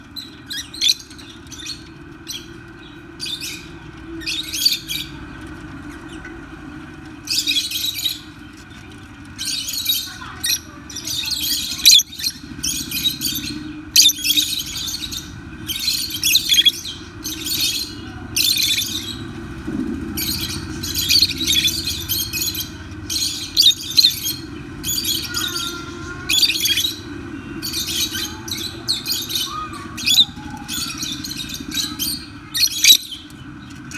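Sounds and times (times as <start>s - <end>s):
steady low hum: 2.6s - 33.9s
lovebirds chirping: 9.4s - 33.9s.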